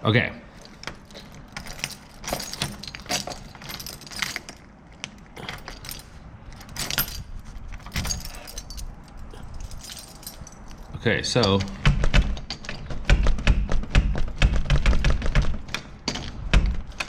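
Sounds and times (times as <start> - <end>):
keys and metal tools clinking: 0.5 - 11.8
dull bump: 11.8 - 15.7.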